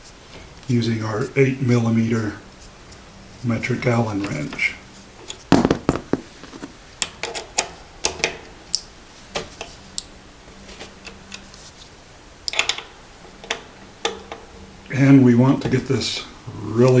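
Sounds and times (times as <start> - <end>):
allen wrench clicking on metal: 12.5 - 14.4.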